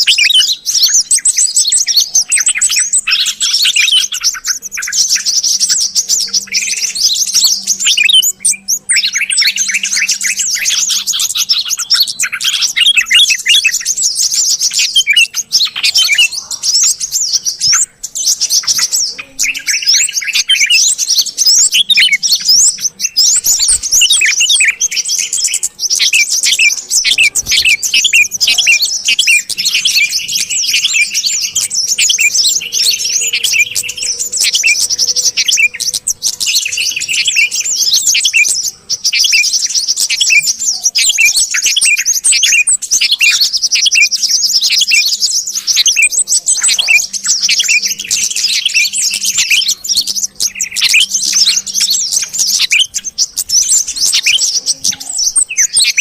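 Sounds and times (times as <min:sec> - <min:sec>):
birds chirping and trilling: 0:00.0 - 0:56.0.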